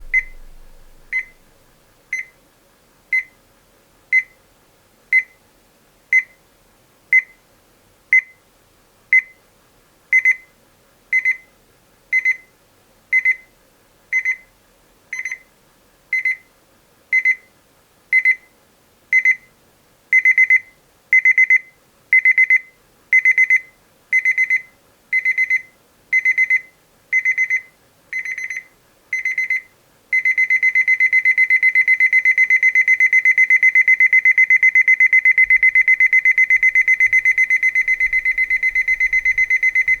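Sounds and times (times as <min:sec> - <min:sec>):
alarm clock beeping: 0:30.2 - 0:40.0.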